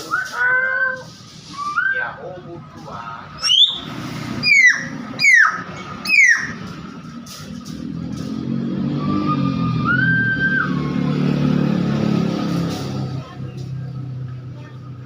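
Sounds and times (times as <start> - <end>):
low engine rumble: 0.0 - 15.0.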